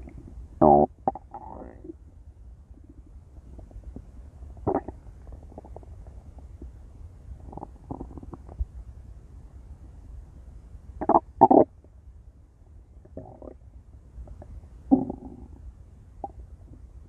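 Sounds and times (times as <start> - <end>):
stomach growling: 0.0 - 2.0, 2.8 - 6.7, 7.4 - 8.7, 11.0 - 11.8, 13.0 - 13.6, 14.2 - 15.6.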